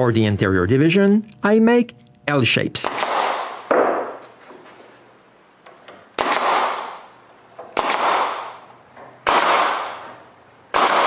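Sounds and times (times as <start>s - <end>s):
nail gun firing: 2.8s - 4.2s, 6.2s - 11.0s.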